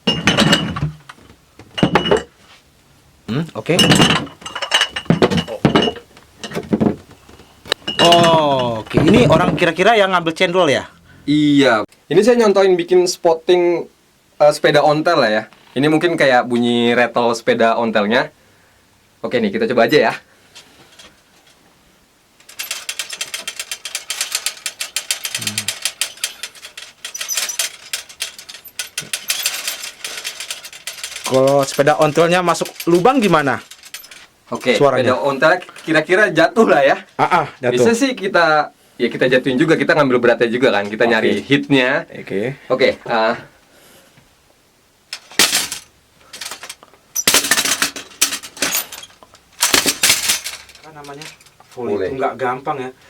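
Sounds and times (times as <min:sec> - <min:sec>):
metal props clanking and rattling: 0:00.0 - 0:02.3, 0:03.7 - 0:09.9, 0:22.4 - 0:36.2, 0:45.1 - 0:51.8
bicycle rattling: 0:22.5 - 0:34.8.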